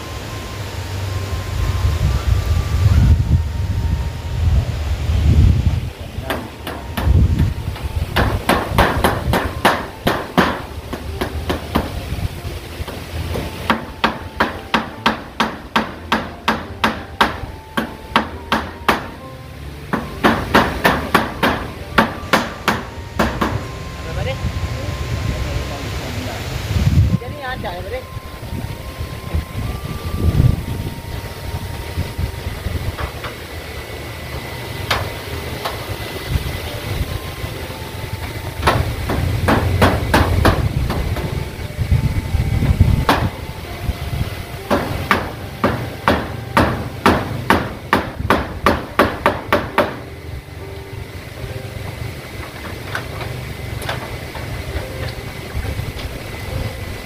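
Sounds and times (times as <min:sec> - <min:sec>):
wind rumble on microphone: 0:00.0 - 0:13.2, 0:23.5 - 0:33.9, 0:36.0 - 0:37.4, 0:39.0 - 0:44.7
hammer striking nails on metal sheets: 0:06.2 - 0:12.0, 0:12.8 - 0:19.3, 0:19.9 - 0:23.7, 0:34.9 - 0:35.8, 0:38.5 - 0:41.4, 0:43.0 - 0:43.4, 0:44.6 - 0:50.1, 0:52.5 - 0:55.2.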